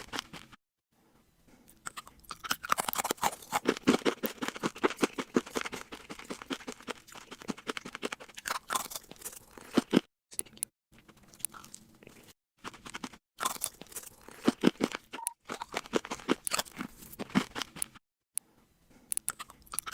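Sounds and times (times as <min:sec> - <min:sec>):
loud crunchy chewing: 0:00.0 - 0:00.6, 0:01.6 - 0:18.0, 0:18.9 - 0:19.9.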